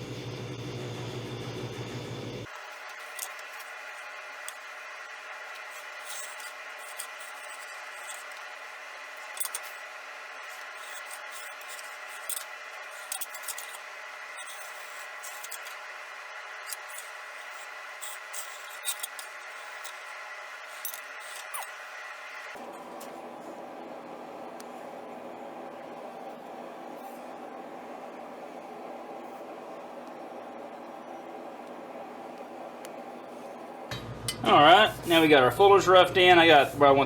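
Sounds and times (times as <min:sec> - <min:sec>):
grinder scraping steel: 0:02.7 - 0:22.6.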